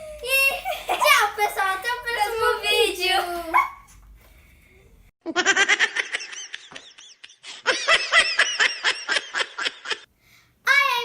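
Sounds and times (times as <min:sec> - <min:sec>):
girls laughing: 0:00.0 - 0:01.6, 0:05.2 - 0:10.1.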